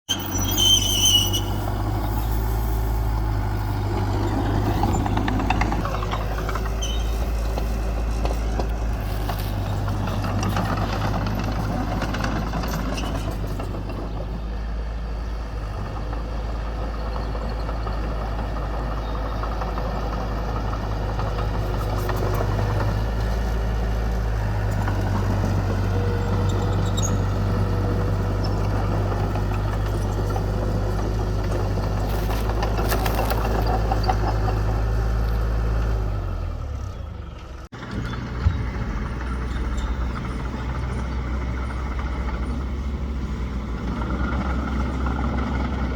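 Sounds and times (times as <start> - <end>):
high squeal: 0.1 - 3.2, 4.2 - 7.6, 26.3 - 27.8
heavy machinery diesel engines rumbling: 0.1 - 45.9.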